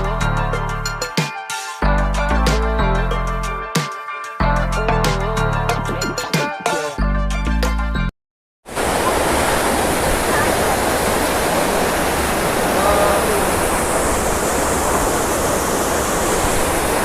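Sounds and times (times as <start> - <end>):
waterfall rushing: 8.7 - 17.0.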